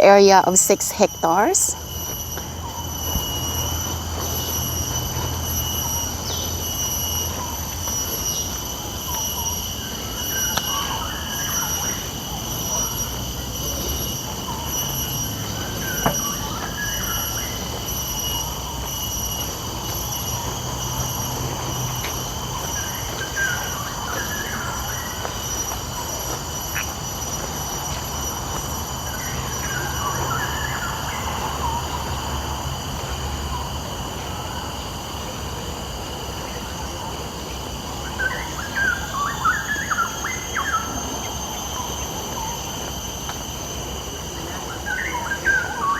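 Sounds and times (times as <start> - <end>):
birds chirping: 0.0 - 27.4
high-pitched insect drone: 0.0 - 45.9.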